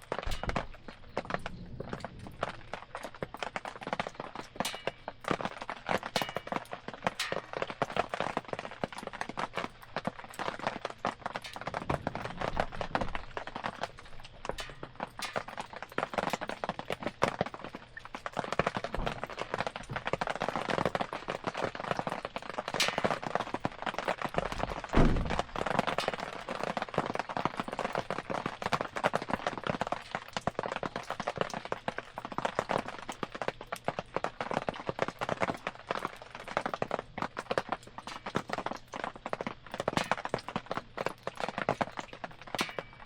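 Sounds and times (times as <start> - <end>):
campfire crackling and popping: 0.0 - 43.0
rain patter: 0.0 - 43.0
dull thump: 25.0 - 25.5.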